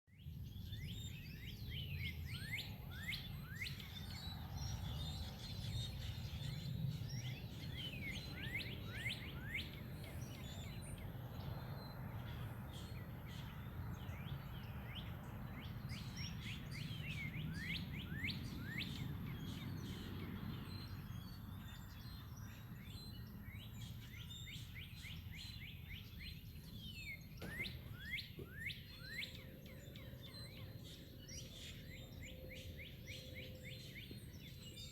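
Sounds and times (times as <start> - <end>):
flock of birds chirping: 0.2 - 34.9.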